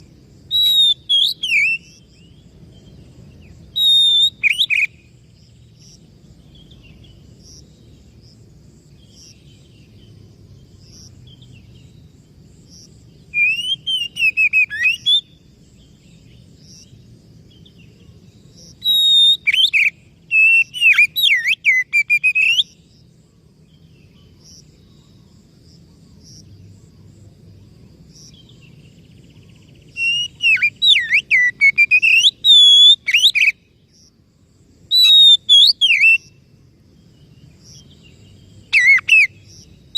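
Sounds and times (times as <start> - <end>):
bird singing whistled notes: 0.0 - 8.2, 10.7 - 16.9, 17.5 - 23.0, 28.1 - 34.1, 34.8 - 36.4, 37.0 - 39.9.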